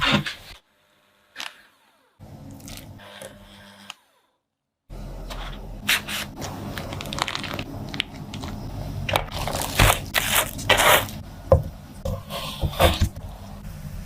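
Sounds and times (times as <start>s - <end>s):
food scraping and crunching: 5.3s - 11.2s.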